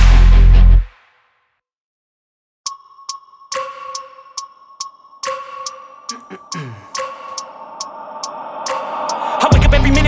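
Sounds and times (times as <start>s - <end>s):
bell-like electronic tone music: 2.7s - 10.0s.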